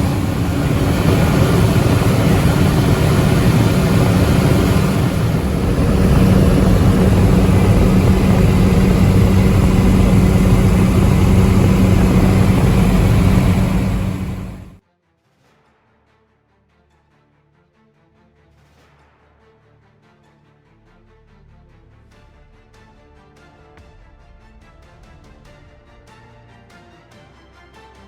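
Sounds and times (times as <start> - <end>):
propeller engine droning: 0.0 - 14.8
rushing air: 0.0 - 14.8.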